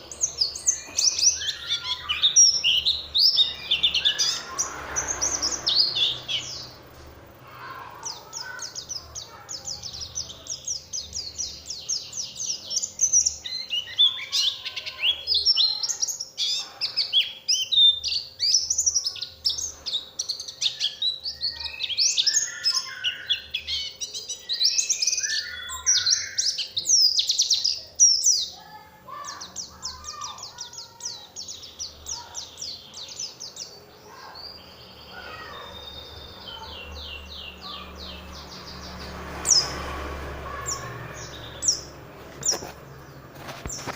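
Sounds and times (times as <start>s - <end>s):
bird twittering song: 0.0s - 43.9s.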